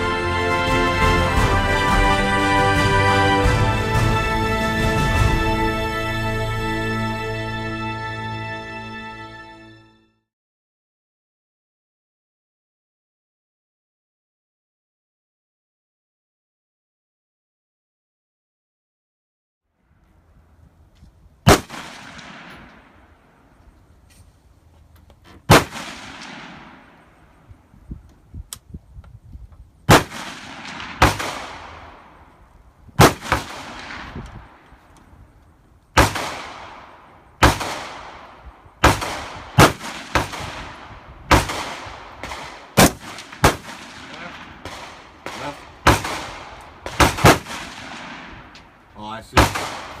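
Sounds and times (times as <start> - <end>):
gunshots with echoing tail: 21.4 - 23.4, 25.5 - 27.7, 29.9 - 32.4, 33.0 - 34.8, 36.0 - 50.0.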